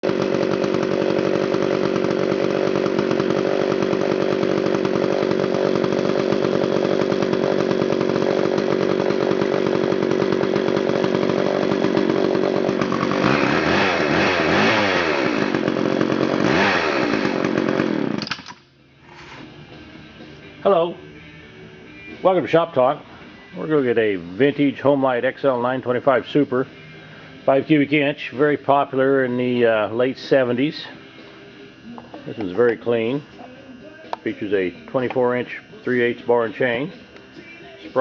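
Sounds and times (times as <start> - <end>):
chainsaw engine revving: 0.0 - 18.4.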